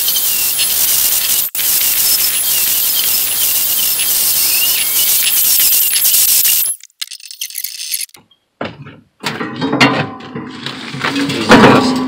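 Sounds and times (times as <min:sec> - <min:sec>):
angle grinder grinding steel: 0:00.0 - 0:06.9.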